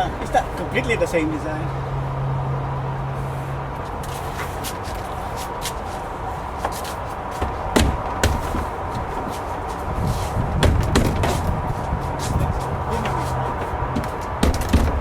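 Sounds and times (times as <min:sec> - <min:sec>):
plastic panels knocking and clicking: 0:07.4 - 0:09.2, 0:10.6 - 0:11.7, 0:13.0 - 0:15.0.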